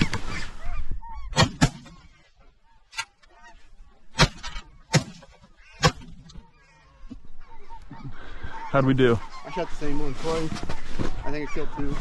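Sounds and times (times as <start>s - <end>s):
geese calling: 0.0s - 12.0s
shotgun shots: 1.4s - 2.0s.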